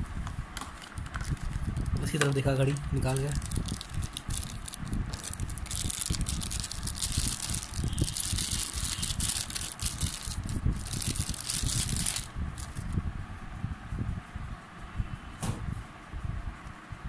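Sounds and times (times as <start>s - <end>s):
packaging crinkling and rustling: 0.6s - 13.0s.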